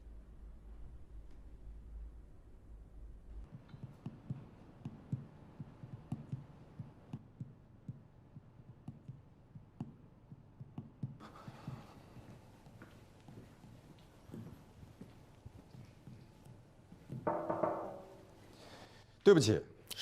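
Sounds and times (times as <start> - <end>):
hard-soled footsteps on hard floor: 10.3 - 18.5.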